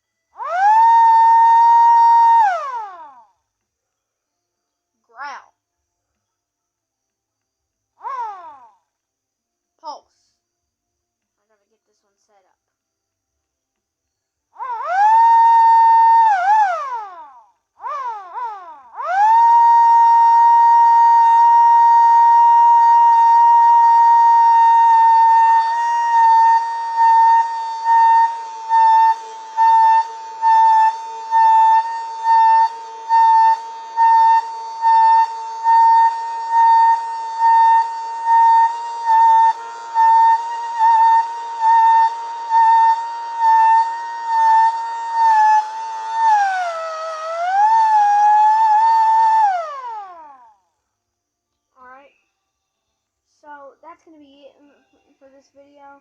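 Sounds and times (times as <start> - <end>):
siren winding up and pulsing: 0.4 - 3.2, 8.0 - 8.6, 14.6 - 50.6.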